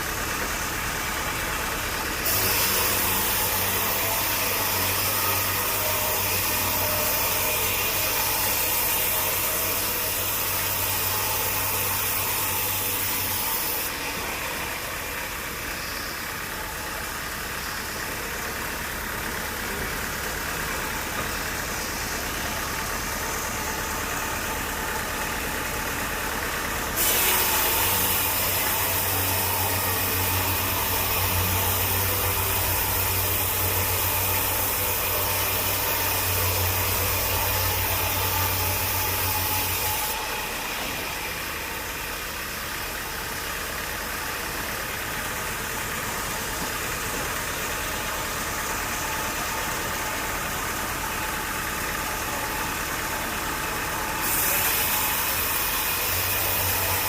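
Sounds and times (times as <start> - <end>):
engine running: 0.0 - 57.0.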